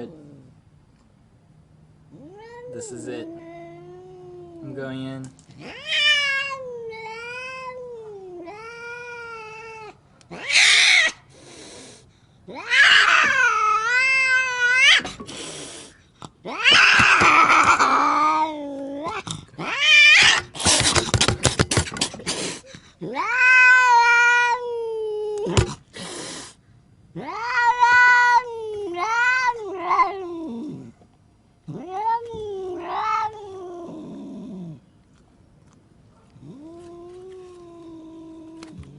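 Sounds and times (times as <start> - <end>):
angry cat yowling: 2.1 - 4.8, 5.6 - 11.2, 12.5 - 15.2, 16.4 - 20.6, 23.0 - 25.7, 27.1 - 31.0, 31.7 - 34.8
cat hissing: 8.4 - 24.6, 25.4 - 31.0.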